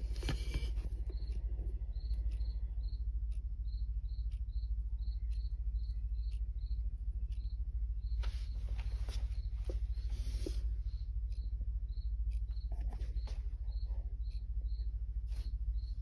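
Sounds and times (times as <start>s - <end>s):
clock ticking: 0.0s - 16.0s
cricket chirping: 0.0s - 16.0s
steady low hum: 0.0s - 16.0s.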